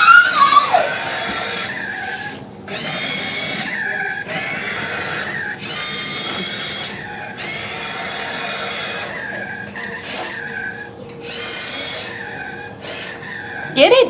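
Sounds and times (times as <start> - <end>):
toy car electric motor whining: 0.0 - 14.0.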